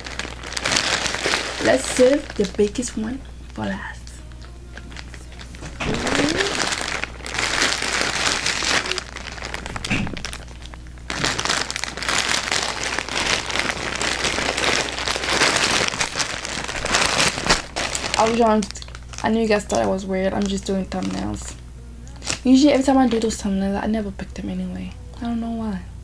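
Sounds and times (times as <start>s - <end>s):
plastic packaging crinkling: 0.0s - 23.5s.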